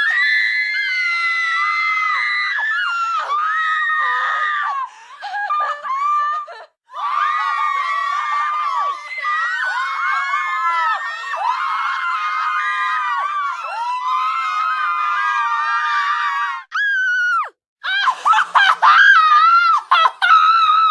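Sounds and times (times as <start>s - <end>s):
children screaming: 6.9s - 20.9s.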